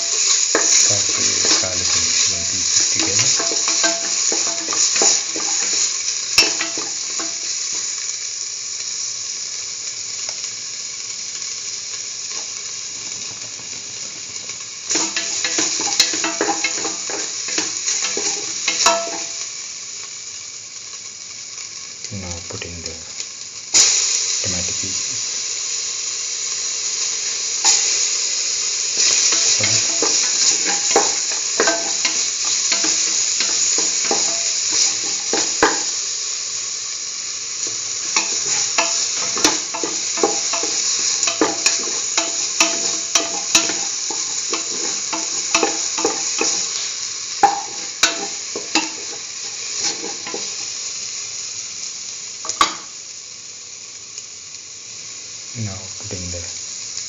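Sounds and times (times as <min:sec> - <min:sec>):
food sizzling in hot oil: 0:00.0 - 0:57.0
utensil scraping pan: 0:00.5 - 0:05.8, 0:14.9 - 0:19.4, 0:29.3 - 0:36.0, 0:37.6 - 0:50.6.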